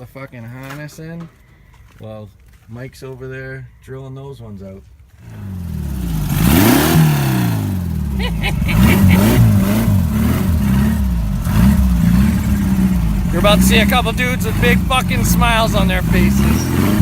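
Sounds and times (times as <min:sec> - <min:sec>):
engine revving hard: 0:05.2 - 0:17.0.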